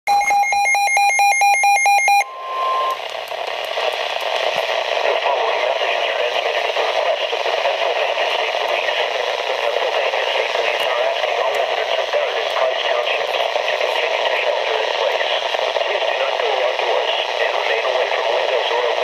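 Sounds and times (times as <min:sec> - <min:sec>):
steady alert tone: 0:00.1 - 0:03.0
radio beeping rapidly: 0:00.1 - 0:19.0
hissy radio broadcast: 0:02.1 - 0:19.0.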